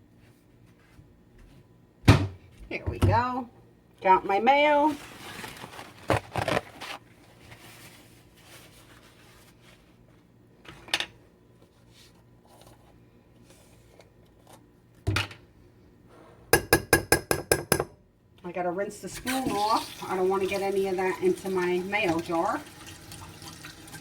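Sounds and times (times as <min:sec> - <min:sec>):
kitchen knocks and clatters: 0:02.1 - 0:03.2, 0:16.5 - 0:18.0.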